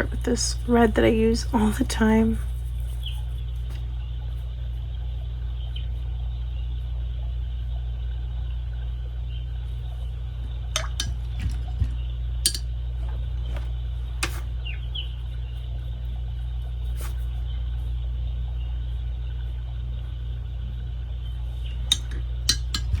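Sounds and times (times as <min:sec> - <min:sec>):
steady low hum: 0:00.0 - 0:23.0
brush clinking on glass jar: 0:12.5 - 0:12.7, 0:21.9 - 0:23.0.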